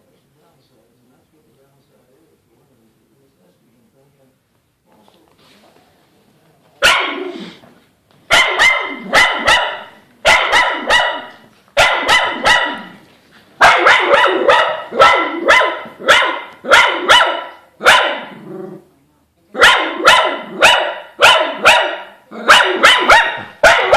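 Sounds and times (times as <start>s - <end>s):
dog barking: 6.8s - 7.4s, 8.3s - 13.0s, 13.6s - 18.4s, 19.6s - 23.9s.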